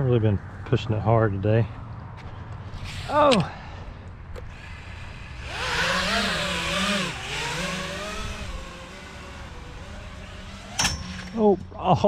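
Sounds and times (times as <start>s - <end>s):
quadcopter propellers whirring: 2.4s - 11.7s.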